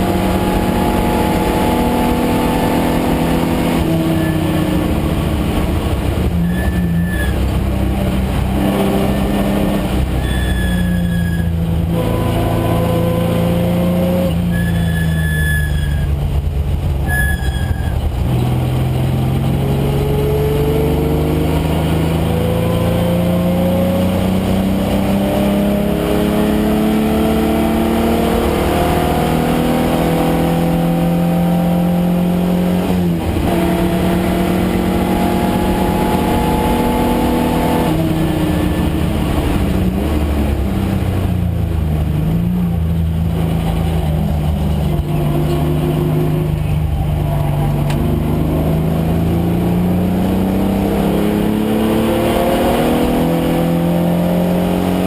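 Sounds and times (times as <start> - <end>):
race car engine revving: 0.0 - 55.0
short high squeals: 4.1 - 4.7, 6.4 - 7.5, 10.2 - 11.7, 14.4 - 16.2, 17.0 - 18.1.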